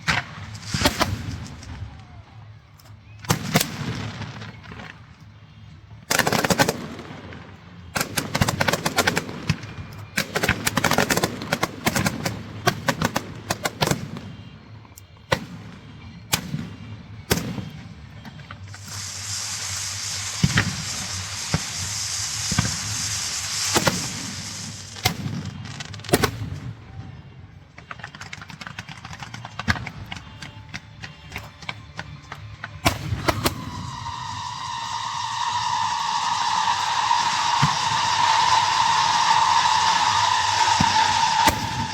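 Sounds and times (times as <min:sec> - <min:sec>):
firecrackers crackling: 0:00.0 - 0:41.9
steady high hiss: 0:17.8 - 0:26.4, 0:29.4 - 0:41.9
loud bangs: 0:18.6 - 0:26.7, 0:32.8 - 0:41.9.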